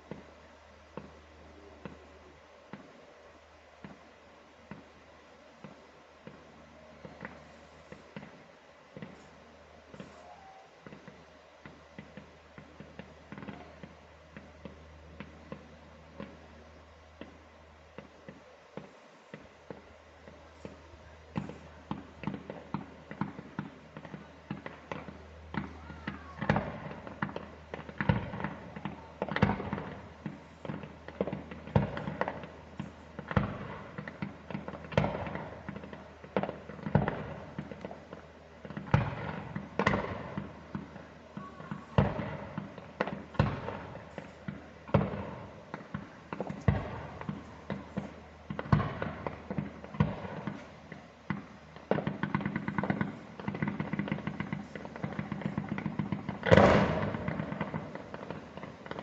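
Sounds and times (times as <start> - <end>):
firework shells bursting: 5.6 - 59.0
rolling echo: 18.0 - 59.0.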